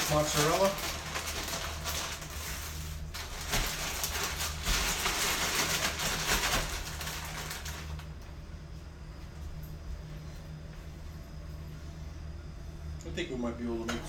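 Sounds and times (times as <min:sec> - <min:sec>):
plastic bag crinkling: 0:00.0 - 0:08.2
steady low hum: 0:00.0 - 0:14.0.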